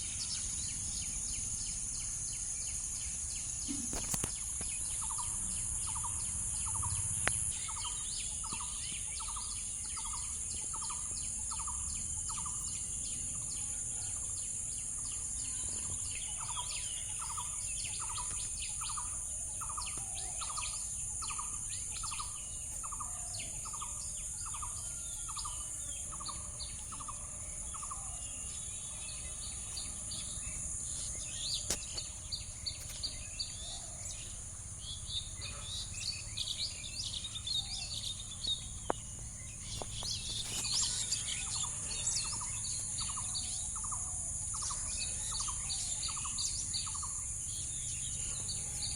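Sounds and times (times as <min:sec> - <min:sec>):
birds chirping and singing: 0:00.0 - 0:48.9.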